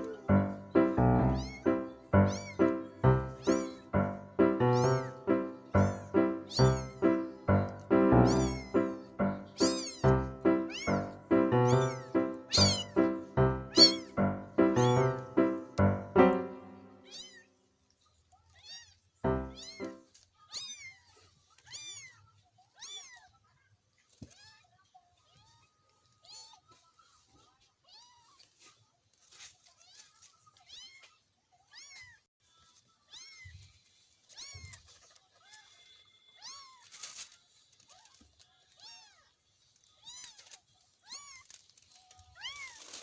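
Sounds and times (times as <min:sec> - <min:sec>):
kittens mewing: 0:00.0 - 0:07.6, 0:08.2 - 0:15.2
background music with steady beat: 0:00.0 - 0:17.0, 0:19.3 - 0:20.0.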